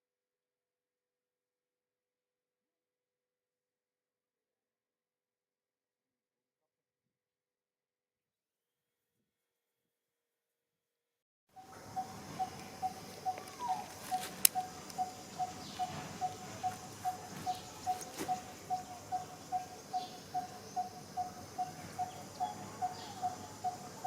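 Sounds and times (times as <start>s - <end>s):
repeated bird or insect call: 11.6s - 24.0s
sharp click: 13.4s - 15.1s.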